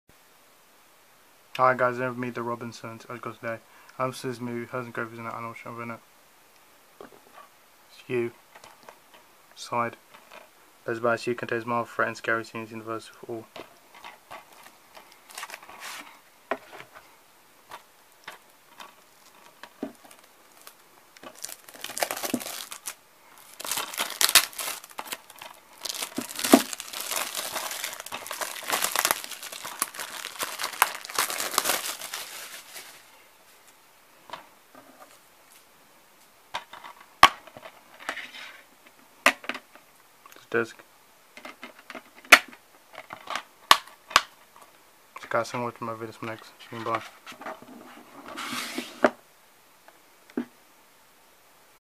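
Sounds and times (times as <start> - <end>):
plastic wrap tearing and crinkling: 14.0 - 16.1, 18.3 - 33.1.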